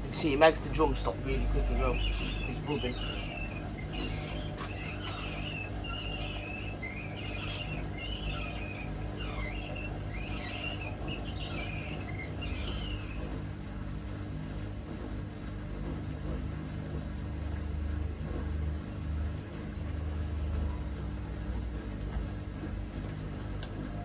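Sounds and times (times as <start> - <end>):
drum squeaking: 0.0 - 13.5
washing machine drum turning: 0.0 - 13.8
motor hum: 0.0 - 24.0.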